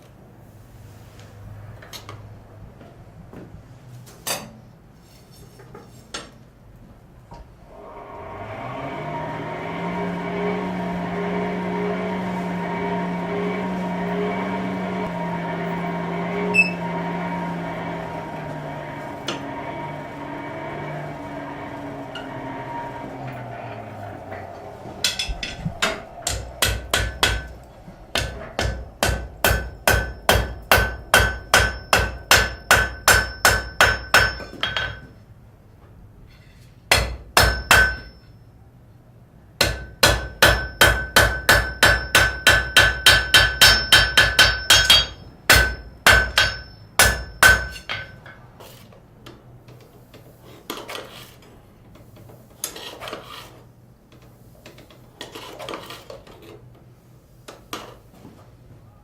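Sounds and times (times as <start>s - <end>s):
hammer striking on anvil: 25.0s - 35.2s, 36.9s - 38.4s, 39.6s - 48.4s.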